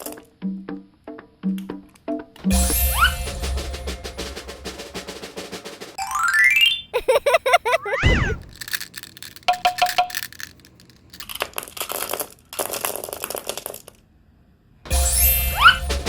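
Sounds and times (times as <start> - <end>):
glass marbles clacking and rattling: 8.0 - 14.0.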